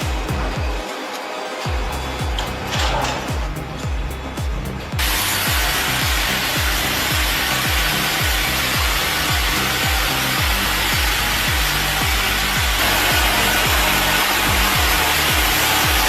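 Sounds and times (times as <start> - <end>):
background music with beat: 0.0 - 16.0
power saw cutting wood: 5.0 - 16.0.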